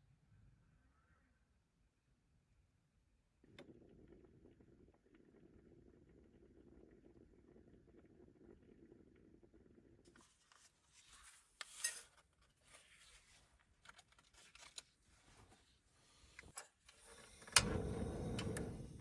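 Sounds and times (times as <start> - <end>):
objects rubbing and clattering: 10.1 - 19.0.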